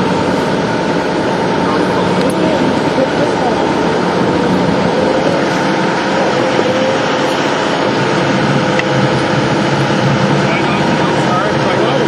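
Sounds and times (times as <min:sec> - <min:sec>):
engine droning: 0:00.0 - 0:12.0.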